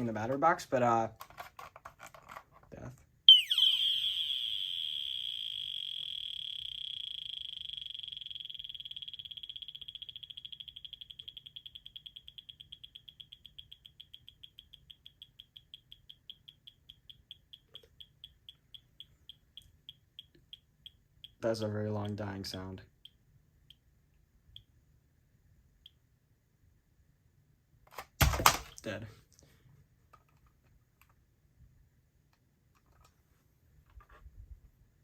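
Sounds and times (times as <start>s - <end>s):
smoke alarm chirps: 3.3s - 21.4s
smoke alarm high-pitched tone: 3.3s - 21.4s.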